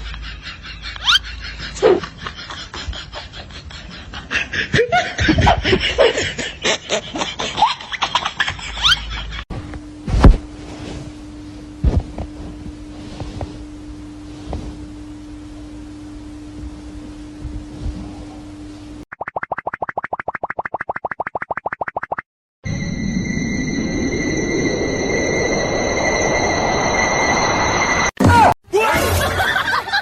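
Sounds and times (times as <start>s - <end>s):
people laughing: 0.0s - 9.4s, 28.9s - 30.0s
steady low hum: 0.0s - 19.0s, 22.7s - 28.1s.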